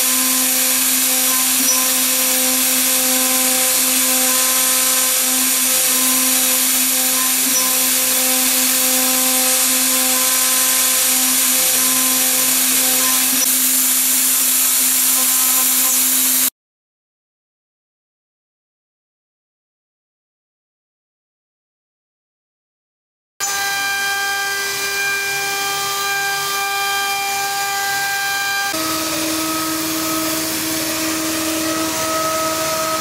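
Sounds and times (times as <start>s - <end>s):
loud hiss: 0.0s - 16.5s
milling spindle high whine: 0.0s - 16.5s, 24.7s - 33.0s.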